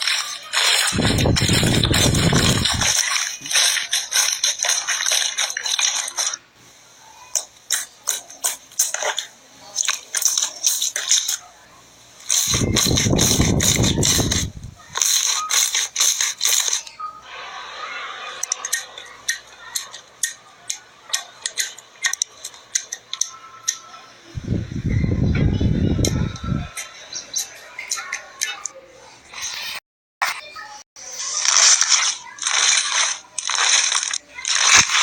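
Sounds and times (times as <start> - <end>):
slime squelch: 0.0 - 6.5, 7.2 - 11.5, 12.2 - 23.8, 31.0 - 35.0.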